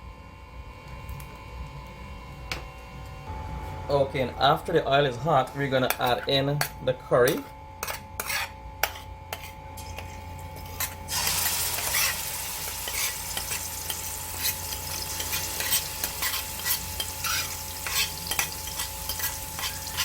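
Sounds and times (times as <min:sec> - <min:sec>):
curry paste sizzling in hot oil: 0:09.8 - 0:20.0
spoon clinking and scraping pot: 0:11.8 - 0:20.0.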